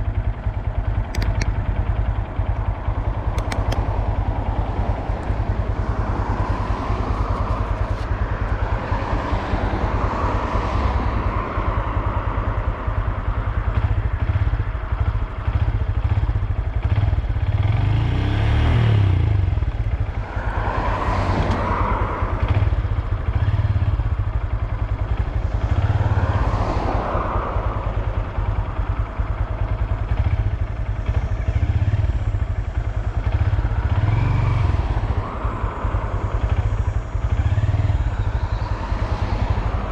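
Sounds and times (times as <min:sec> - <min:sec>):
motorcycle engine revving: 0:00.0 - 0:10.6, 0:13.0 - 0:39.9.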